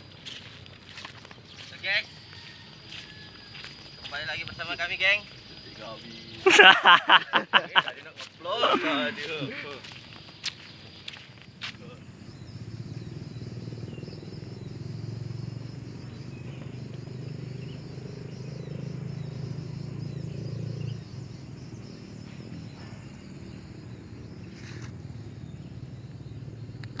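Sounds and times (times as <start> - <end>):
insect drone: 0.0 - 27.0
faint bird chirps: 7.2 - 27.0.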